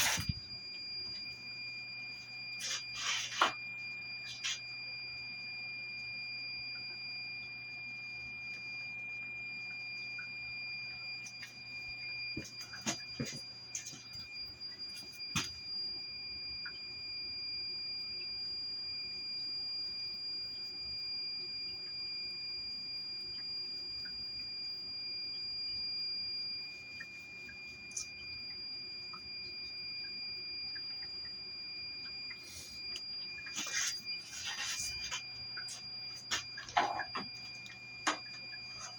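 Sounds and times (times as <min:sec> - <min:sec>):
high-pitched electronic tone: 0:00.0 - 0:00.4, 0:32.4 - 0:38.9.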